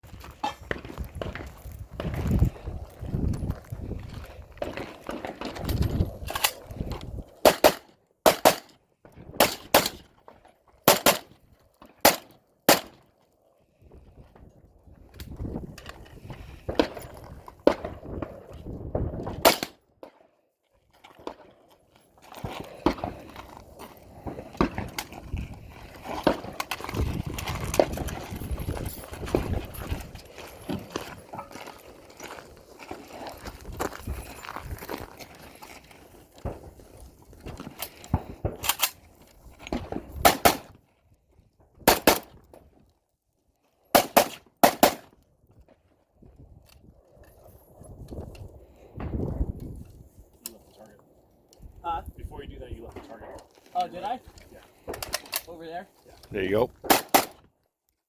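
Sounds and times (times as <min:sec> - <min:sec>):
gunshots: 0:07.4 - 0:08.8, 0:09.4 - 0:10.0, 0:10.9 - 0:11.3, 0:12.0 - 0:13.0, 0:19.4 - 0:19.8, 0:40.2 - 0:40.7, 0:41.9 - 0:42.3, 0:44.0 - 0:45.1, 0:56.8 - 0:57.4.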